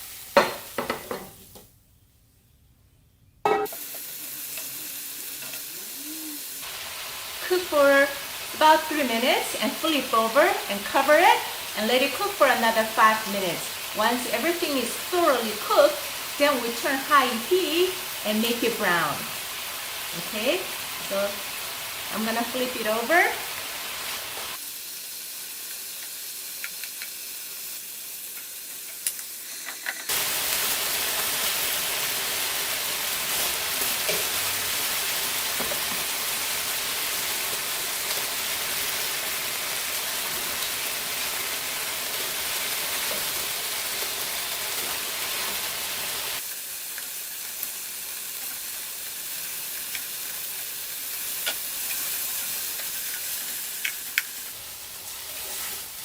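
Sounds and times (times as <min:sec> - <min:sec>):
beef sizzling in a skillet: 0:00.0 - 0:01.5, 0:03.6 - 0:56.0.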